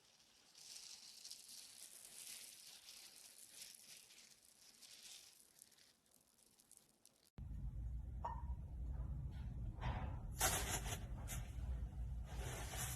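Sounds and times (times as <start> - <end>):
slime crackling and squishing: 0.0 - 7.4.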